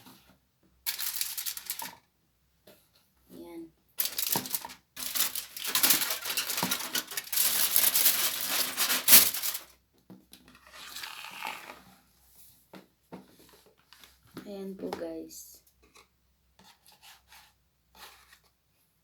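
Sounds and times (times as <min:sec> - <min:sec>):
food packaging crinkling and tearing: 0:00.9 - 0:02.0, 0:04.0 - 0:09.7.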